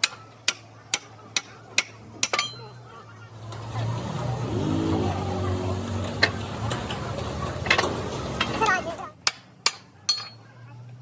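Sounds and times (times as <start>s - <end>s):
tools clicking and tapping: 0.0s - 2.6s, 9.3s - 10.4s.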